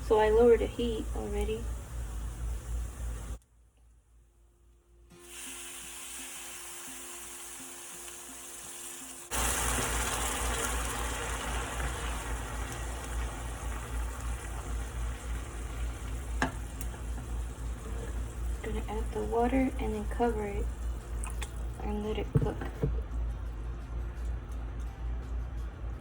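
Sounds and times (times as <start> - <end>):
rice and garlic sizzling in oil: 0.5 - 3.4, 5.2 - 21.2.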